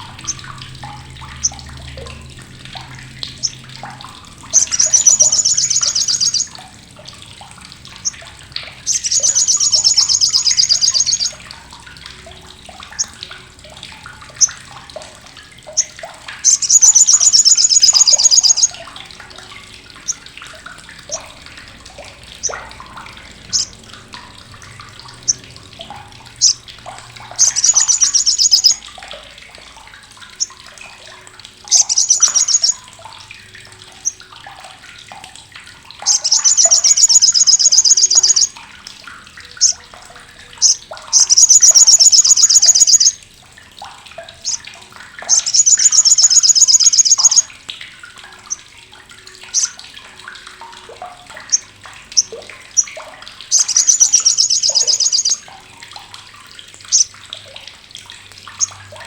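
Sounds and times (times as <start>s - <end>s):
bird harsh chattering: 4.5s - 6.5s, 8.9s - 11.4s, 15.8s - 18.7s, 27.4s - 28.8s, 31.7s - 32.8s, 36.1s - 38.5s, 40.6s - 43.1s, 45.3s - 47.5s, 53.5s - 55.4s.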